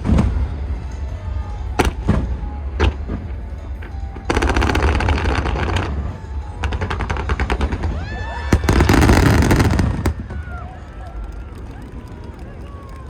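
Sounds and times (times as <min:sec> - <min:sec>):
fireworks crackling: 0:01.8 - 0:13.0
firework whistles rising: 0:07.8 - 0:10.7.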